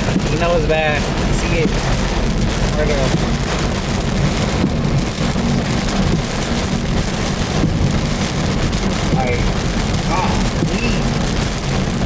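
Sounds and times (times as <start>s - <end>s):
heavy rain on car: 0.0s - 12.0s
low car rumble: 0.0s - 12.0s.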